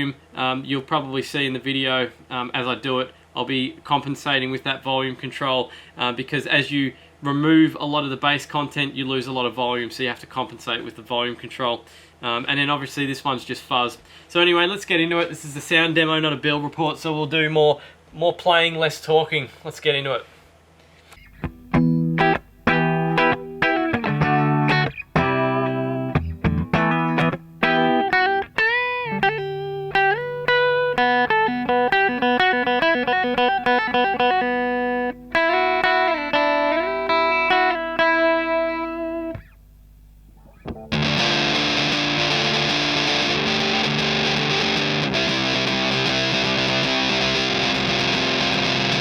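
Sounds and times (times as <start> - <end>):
fuzzy electric guitar: 21.2 - 39.6, 40.3 - 49.0.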